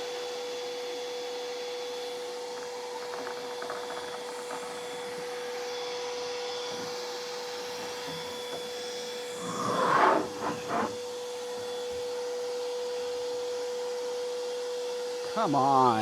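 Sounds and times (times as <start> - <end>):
table saw whine: 0.0 - 16.0
saw blade cutting wood: 7.6 - 11.0.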